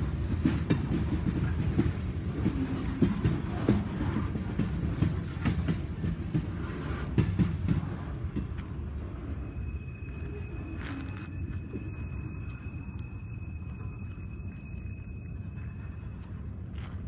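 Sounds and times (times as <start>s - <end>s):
railroad car wheels knocking: 0.0s - 9.9s.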